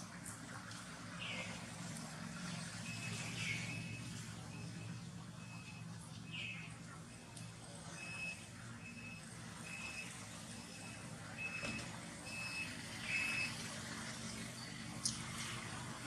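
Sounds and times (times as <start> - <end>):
low engine hum: 0.0 - 16.0
reversing beeper: 2.8 - 7.3, 7.9 - 13.6.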